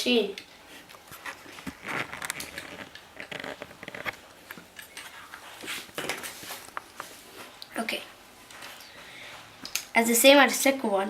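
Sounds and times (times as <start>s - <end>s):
plastic scrape: 1.1s - 4.2s.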